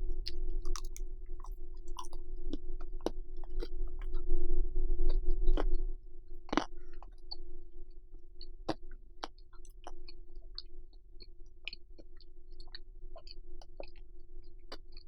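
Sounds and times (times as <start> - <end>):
faint steady hum: 0.0 - 15.0
close chewing mouth sounds: 0.2 - 4.2, 6.5 - 7.4, 8.1 - 15.0.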